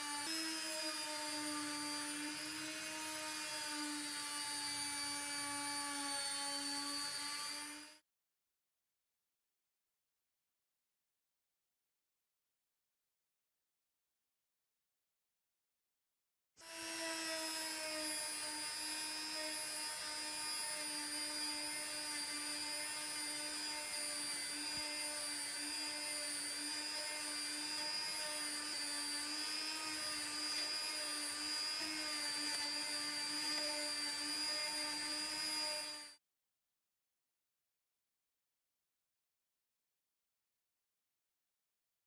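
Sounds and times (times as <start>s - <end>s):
small electric motor whining: 0.0s - 8.0s, 16.6s - 36.2s.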